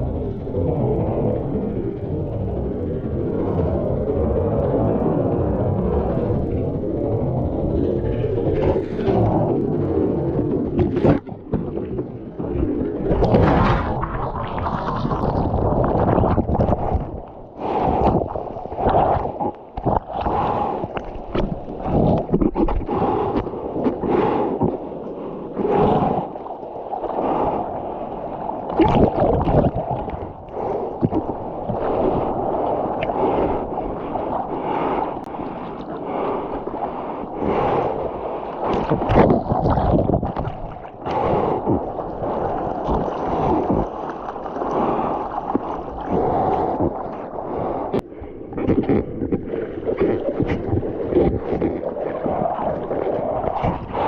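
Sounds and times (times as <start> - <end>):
wind buffeting microphone: 0.0 - 24.9
seawater sloshing and splashing: 0.0 - 54.0.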